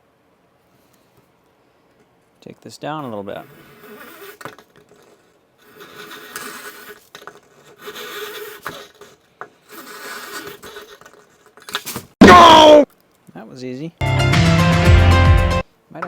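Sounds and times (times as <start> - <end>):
hand file rasping on fiberglass: 3.1 - 11.5.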